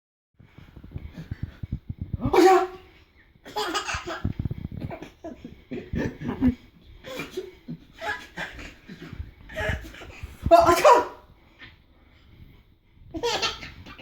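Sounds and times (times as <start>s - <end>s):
baby belly laughing: 3.4s - 11.2s, 13.1s - 14.0s
man sneezing loudly: 10.5s - 11.2s.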